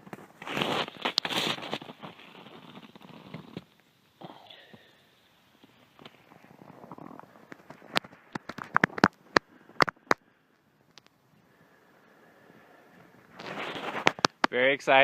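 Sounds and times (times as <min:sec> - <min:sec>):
soft rustling: 0:00.0 - 0:03.7, 0:13.0 - 0:14.4
sharp crunches and snaps: 0:00.0 - 0:04.9, 0:05.6 - 0:11.2, 0:13.4 - 0:14.6.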